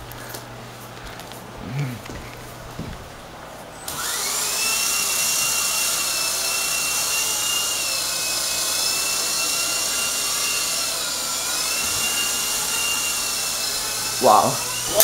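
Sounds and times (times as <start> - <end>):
toy helicopter motor whine: 3.8 - 15.0.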